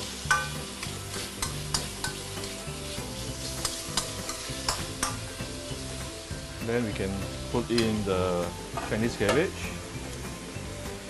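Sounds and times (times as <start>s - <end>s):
food sizzling in oil: 0.0s - 11.0s
spatula scraping a pan: 0.1s - 5.6s.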